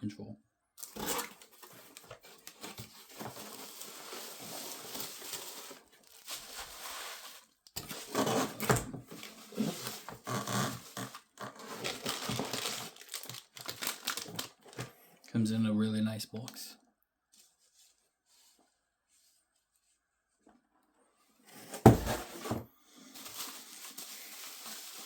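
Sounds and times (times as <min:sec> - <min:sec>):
cardboard box rustling: 0:00.8 - 0:14.8, 0:21.6 - 0:25.0.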